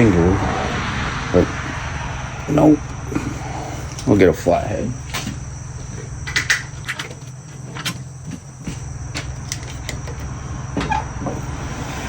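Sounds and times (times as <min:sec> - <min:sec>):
steady low hum: 0:00.0 - 0:12.0
hand tools clicking and tapping: 0:05.0 - 0:11.6.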